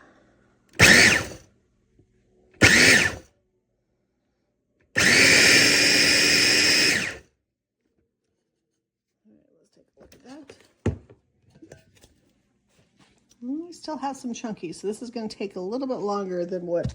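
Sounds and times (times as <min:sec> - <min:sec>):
electric food chopper whining: 0:00.8 - 0:01.4, 0:02.6 - 0:03.2, 0:05.0 - 0:07.2.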